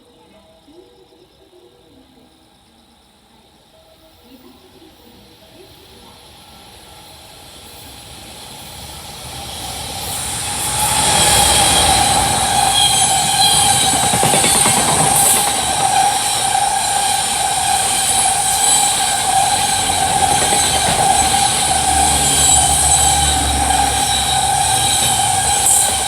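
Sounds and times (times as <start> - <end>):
train whine: 3.3 - 26.0
freight train rushing past: 5.3 - 26.0.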